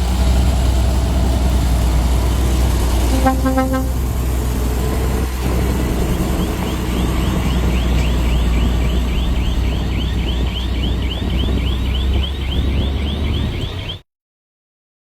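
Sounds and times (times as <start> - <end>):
diesel machinery rumbling: 0.0 - 14.0
electronic warbling alarm: 3.1 - 4.2, 5.6 - 14.0.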